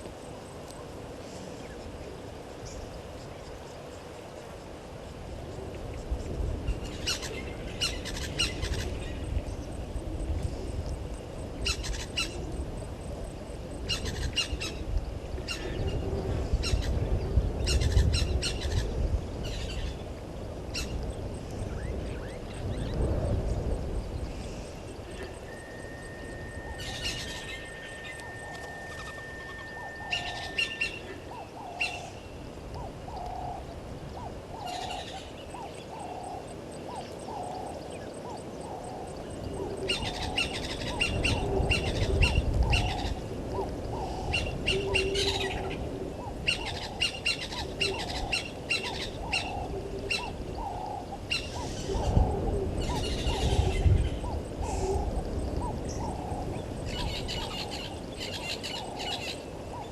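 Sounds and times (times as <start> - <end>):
high bird chirping: 25.0 - 32.0
bird low repeated note: 25.2 - 31.2
thin whistle: 25.3 - 31.2.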